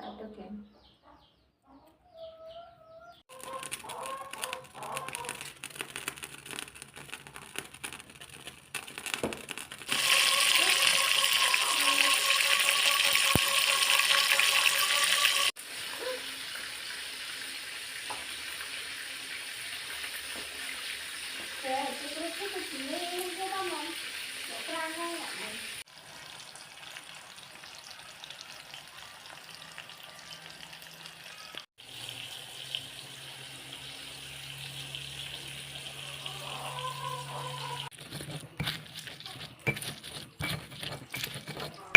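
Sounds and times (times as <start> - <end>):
oil sizzling in a pan: 4.4 - 37.9.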